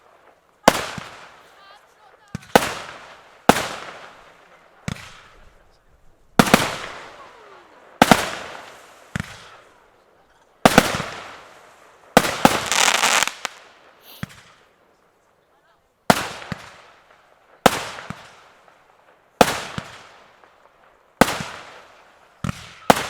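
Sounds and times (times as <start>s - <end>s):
firework bangs: 0.0s - 1.4s, 2.3s - 5.6s, 6.3s - 9.8s, 10.6s - 14.7s, 16.1s - 18.8s, 19.4s - 23.0s
firework crackle: 0.0s - 5.6s, 6.2s - 10.0s, 10.6s - 14.8s, 16.0s - 23.0s
firework hiss: 8.0s - 9.8s, 10.7s - 14.6s.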